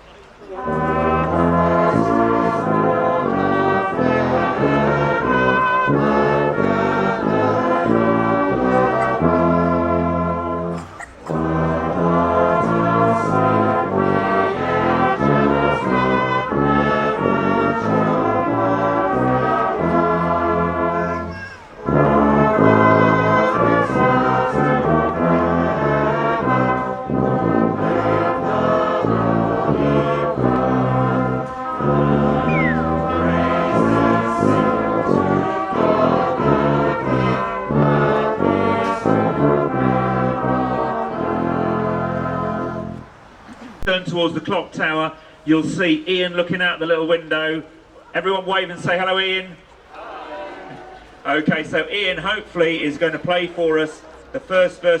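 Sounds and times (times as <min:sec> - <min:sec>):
brass band playing a carol: 0:00.0 - 0:49.5.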